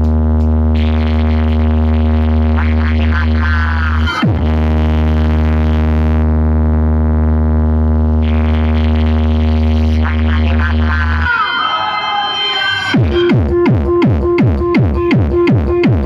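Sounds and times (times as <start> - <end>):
synthesizer bass note: 0.0 - 16.0.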